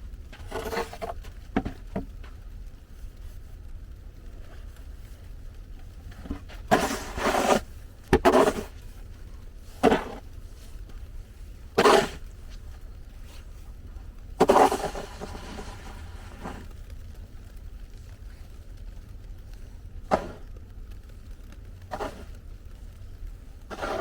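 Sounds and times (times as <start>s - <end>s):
steady low rumble: 0.0s - 24.0s
short scraping noises: 6.7s - 8.7s, 11.8s - 12.2s, 14.4s - 16.7s, 20.1s - 20.5s, 21.9s - 22.4s, 23.7s - 24.0s.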